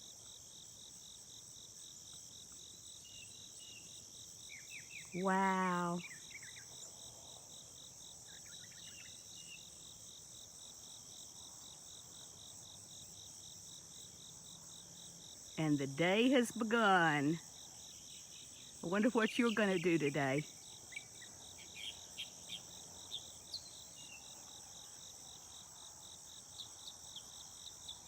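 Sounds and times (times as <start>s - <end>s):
crickets trilling: 0.0s - 28.0s
high insect hum: 0.0s - 28.0s
faint bird chirps: 20.9s - 24.4s.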